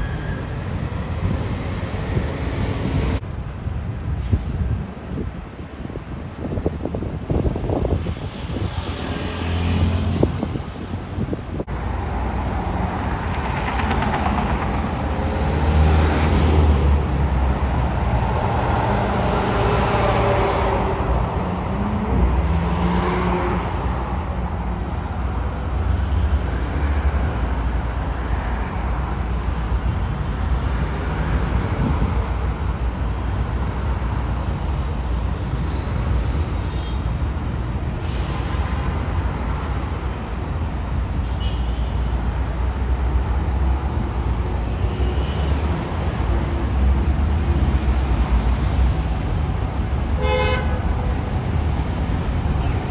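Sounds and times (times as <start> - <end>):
motor vehicles passing: 11.7 - 40.8.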